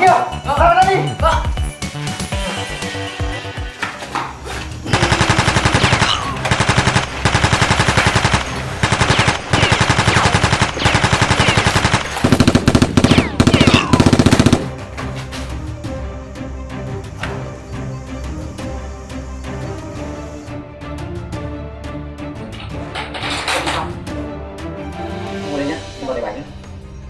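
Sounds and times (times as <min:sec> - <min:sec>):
automatic gunfire bursts: 0:04.9 - 0:14.8.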